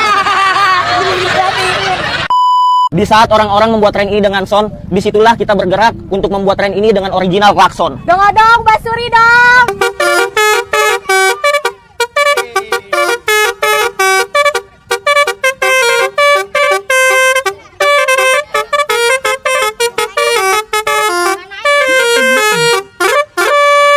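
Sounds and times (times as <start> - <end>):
musical horn melody: 9.6 - 23.9.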